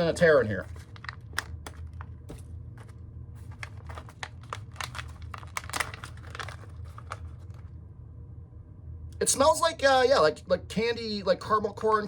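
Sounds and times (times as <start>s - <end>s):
popcorn bag crinkling: 0.0s - 7.7s.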